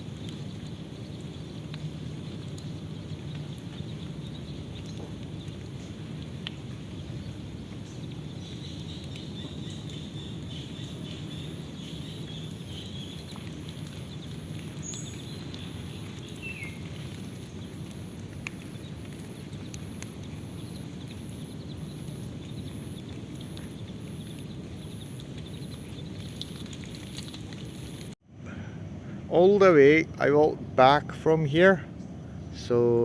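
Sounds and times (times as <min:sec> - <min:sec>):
steady low rumble: 0:00.0 - 0:33.0
faint high bird chirps: 0:06.9 - 0:17.7.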